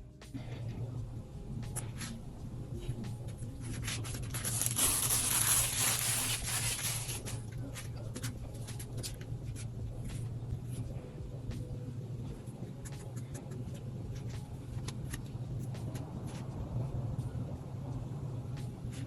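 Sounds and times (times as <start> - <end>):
low steady hum: 0.0 - 19.0
rubbing scrape: 3.9 - 7.4.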